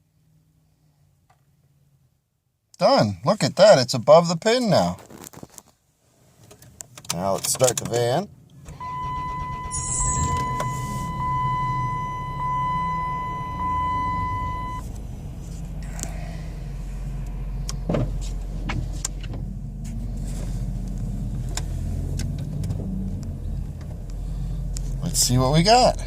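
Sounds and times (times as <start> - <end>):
car engine idling: 8.6 - 26.0
high-pitched electronic warning tone: 8.8 - 14.8.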